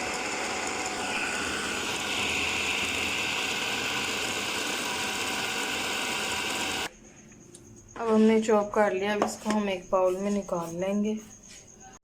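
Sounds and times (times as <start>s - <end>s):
electric food chopper running: 0.0s - 6.9s.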